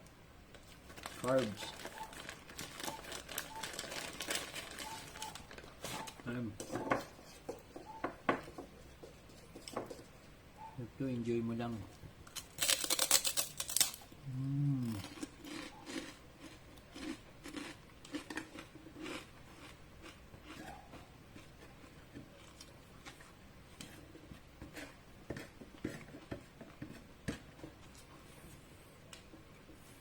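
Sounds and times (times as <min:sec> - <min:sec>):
pork cracklings crunching: 0:00.9 - 0:06.3, 0:12.2 - 0:14.2, 0:14.8 - 0:23.1
person humming: 0:14.2 - 0:15.0.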